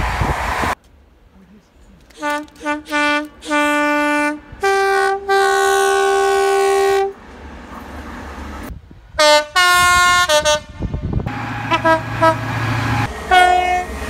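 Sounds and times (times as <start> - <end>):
train two-tone horn: 2.2 - 7.2, 9.2 - 14.0.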